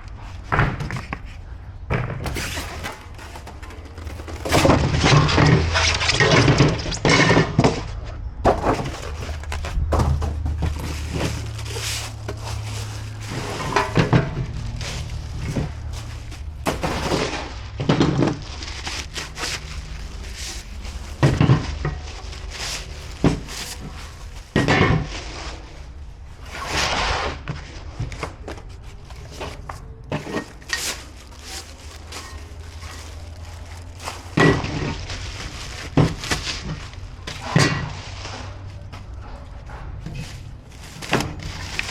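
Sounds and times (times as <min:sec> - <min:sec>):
scraping and rustling: 0:00.0 - 0:41.9
metal parts clanking: 0:02.2 - 0:25.2, 0:29.1 - 0:38.6.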